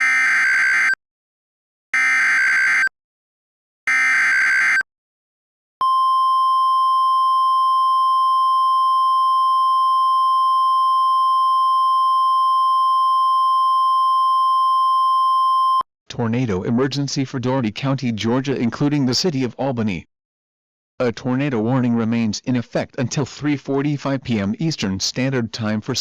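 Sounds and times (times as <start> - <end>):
steady warning alarm tone: 0.0 - 1.0, 2.0 - 2.9, 3.9 - 4.8.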